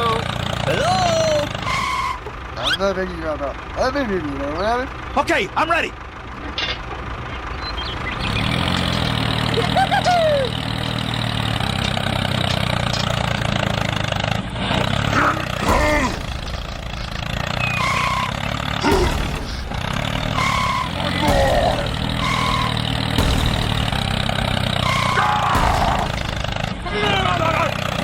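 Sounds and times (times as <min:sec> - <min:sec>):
engine starting and running: 0:00.0 - 0:28.0
short squeaky glides: 0:01.6 - 0:02.9, 0:15.7 - 0:27.0.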